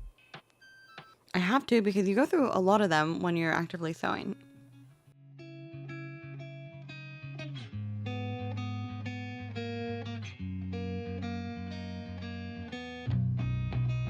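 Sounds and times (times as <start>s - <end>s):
plucked guitar chords: 4.4s - 14.0s.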